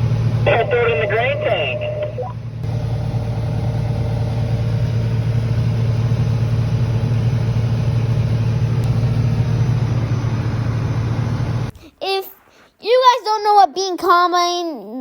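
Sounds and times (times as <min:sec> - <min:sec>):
faint steady hum: 0:00.0 - 0:07.4
combine harvester engine drone: 0:00.0 - 0:12.2.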